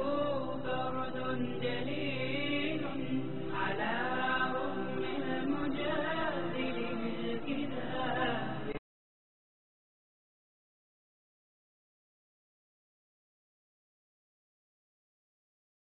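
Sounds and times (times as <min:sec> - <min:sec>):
held vocal drone: 0:00.0 - 0:08.8
melodic lead voice chanting: 0:00.0 - 0:08.8.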